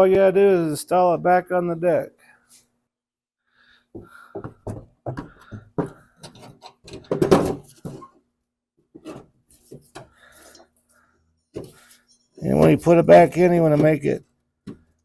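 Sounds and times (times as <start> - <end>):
tools and parts knocking and clinking: 5.8 - 8.2.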